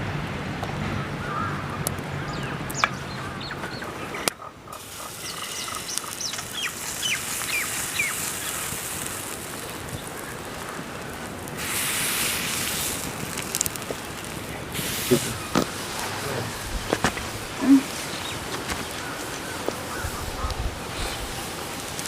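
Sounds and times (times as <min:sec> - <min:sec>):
burst of hiss: 0:04.8 - 0:22.0.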